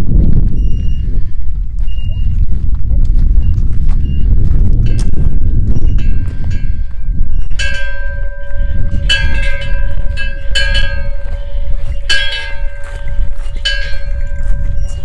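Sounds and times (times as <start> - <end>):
bell-like chime: 7.4 - 15.0.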